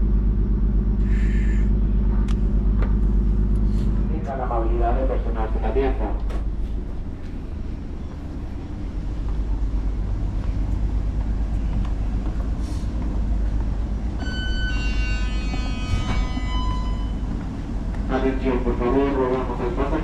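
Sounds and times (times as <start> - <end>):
ship engine rumble: 0.0 - 20.0.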